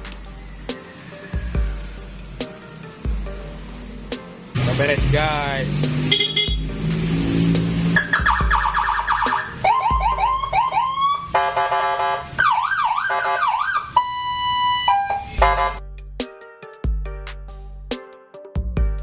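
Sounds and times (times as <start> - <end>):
background music with a beat: 0.0 - 10.8, 15.4 - 19.0
electronic police siren: 8.0 - 15.8.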